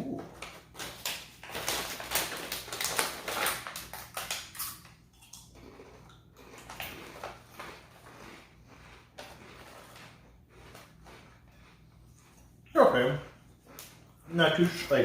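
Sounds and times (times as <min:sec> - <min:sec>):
crunchy snack being chewed: 0:00.3 - 0:14.8.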